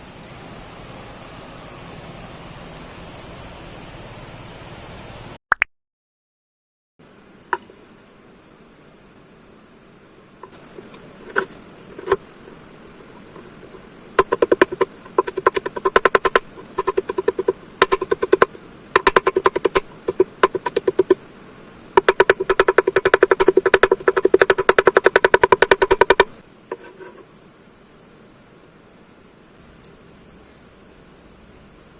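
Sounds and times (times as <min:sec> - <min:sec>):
knife chopping on cutting board: 0:11.2 - 0:12.2, 0:14.2 - 0:21.2, 0:22.0 - 0:27.2.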